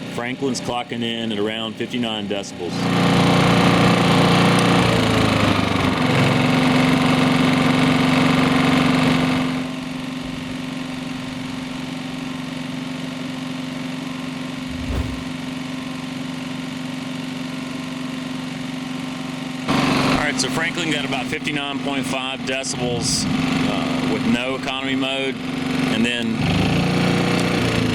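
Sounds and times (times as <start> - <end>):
generator running: 2.6 - 9.4, 19.7 - 21.1.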